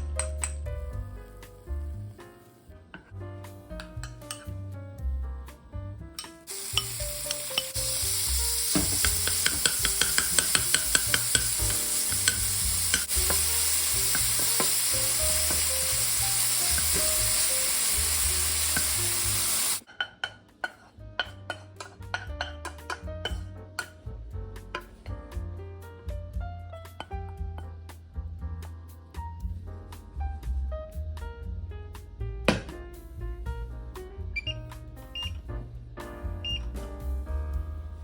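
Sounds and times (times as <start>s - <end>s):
soft background music: 0.0s - 38.0s
food sizzling in a hot pan: 6.5s - 19.9s
utensil stirring clicks: 9.0s - 17.2s.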